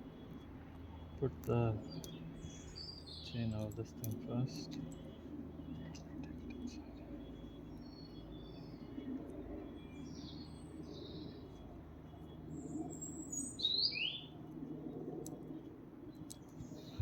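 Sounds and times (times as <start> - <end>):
birds chirping and whistling: 1.0 - 3.8, 4.4 - 11.6, 12.2 - 14.4.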